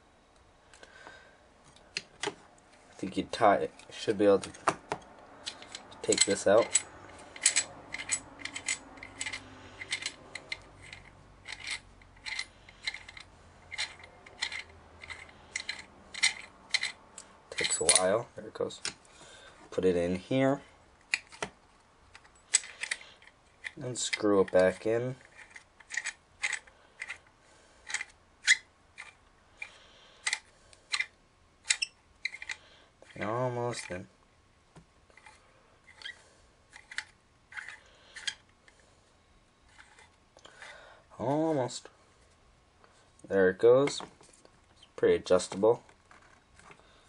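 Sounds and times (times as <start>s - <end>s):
screw thread scraping: 5.4s - 18.1s, 22.1s - 34.0s, 35.1s - 38.5s, 39.7s - 40.8s.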